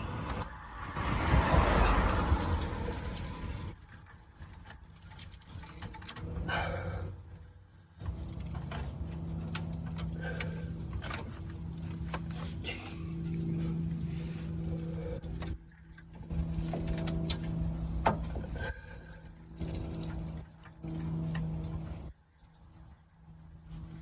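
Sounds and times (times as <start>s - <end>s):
metal tools clinking and rattling: 1.8s - 7.4s
steady low hum: 1.8s - 24.0s.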